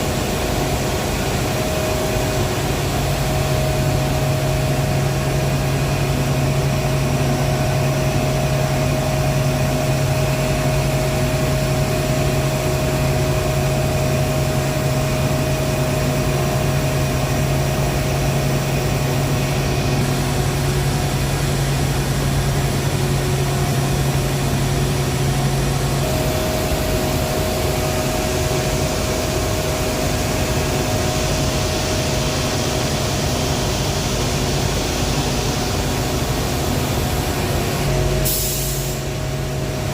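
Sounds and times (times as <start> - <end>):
heavy industrial machinery humming: 0.0 - 39.9
noisy rushing hiss: 0.0 - 39.9
steady higher tone: 17.7 - 31.3.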